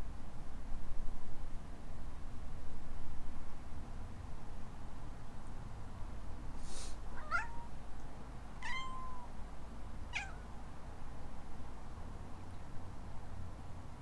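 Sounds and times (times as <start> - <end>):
kitten meowing: 7.1 - 7.7, 8.6 - 9.3, 10.2 - 10.4.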